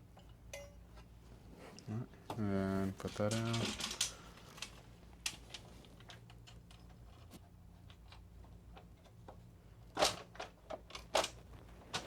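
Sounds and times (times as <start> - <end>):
small parts clicking and tapping: 3.0 - 12.0.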